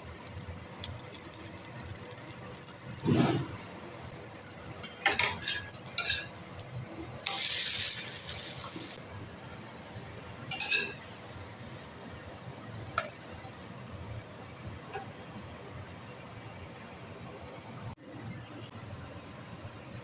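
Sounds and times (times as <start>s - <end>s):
utensils clinking against cookware: 0.0s - 9.0s, 10.4s - 11.1s
short hiss: 7.2s - 9.0s.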